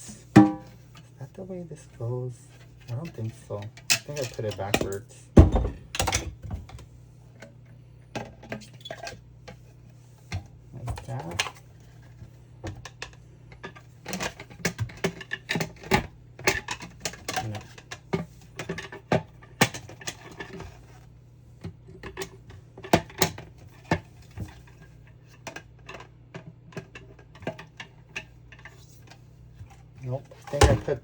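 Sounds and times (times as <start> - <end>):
steady low hum: 0.0 - 26.1
plastic parts clicking and clattering: 2.9 - 5.0, 10.8 - 20.9, 21.9 - 31.0.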